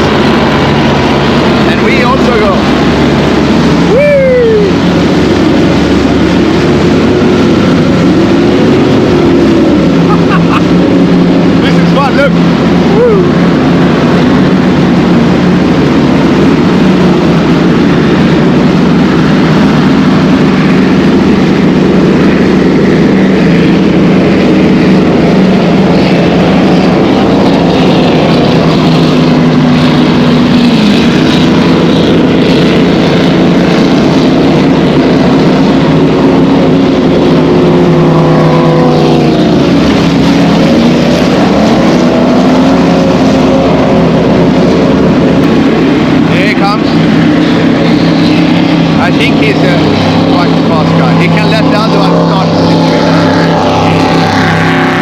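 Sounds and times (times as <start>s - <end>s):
motorboat engines droning: 0.0s - 55.0s.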